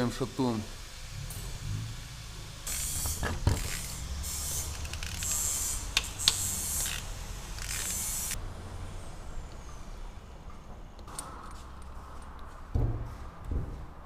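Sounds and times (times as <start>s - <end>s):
ratchet wrench clicking: 2.7s - 8.4s.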